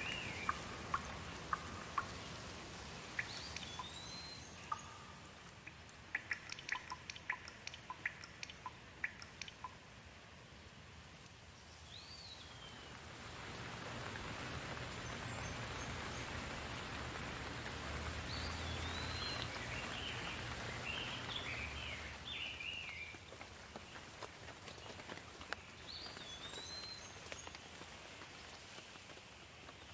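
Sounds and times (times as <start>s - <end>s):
birds chirping: 0.0s - 9.8s, 14.8s - 24.1s
rain falling: 0.0s - 29.9s.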